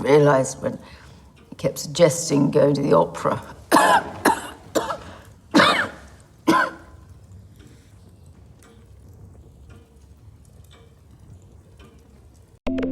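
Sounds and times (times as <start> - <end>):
woman coughing: 3.7 - 6.9.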